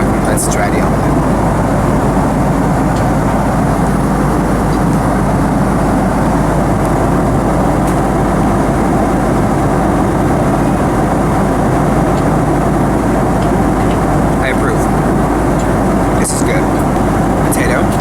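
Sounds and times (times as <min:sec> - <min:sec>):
jet engine and airflow roar: 0:00.0 - 0:18.0.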